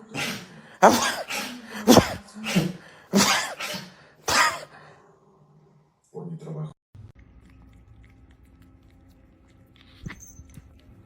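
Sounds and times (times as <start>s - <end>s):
animal sneezing bursts: 0.0s - 4.8s.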